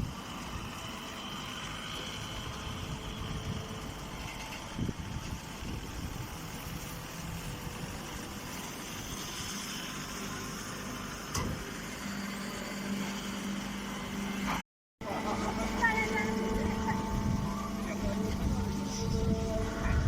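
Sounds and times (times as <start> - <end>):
baler machine running: 0.0 - 20.0
low hum: 11.8 - 20.0.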